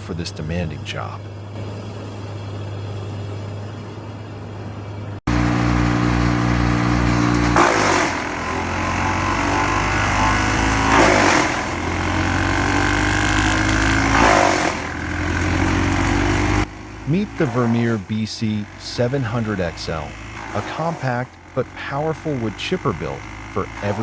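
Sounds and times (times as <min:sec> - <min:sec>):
wood chipper engine running: 0:01.6 - 0:24.0
wood going through chipper: 0:05.3 - 0:24.0.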